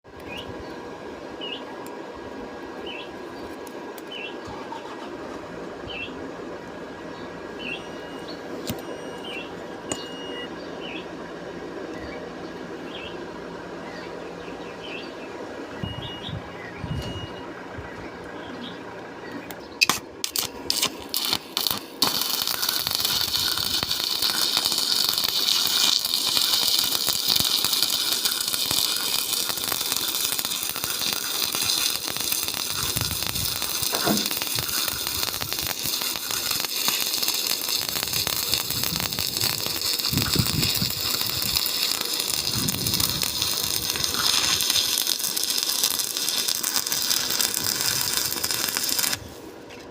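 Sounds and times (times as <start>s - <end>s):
welding electrode sputtering: 19.8s - 49.4s
welding arc crackle and hiss: 19.8s - 49.5s.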